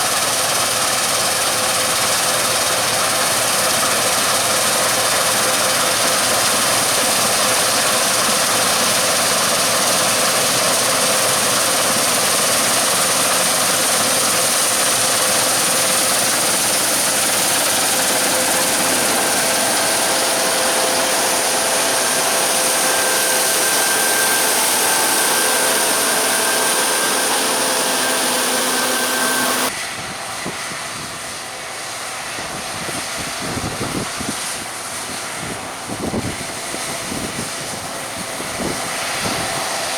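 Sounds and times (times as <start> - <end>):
combine harvester running: 0.0 - 30.7.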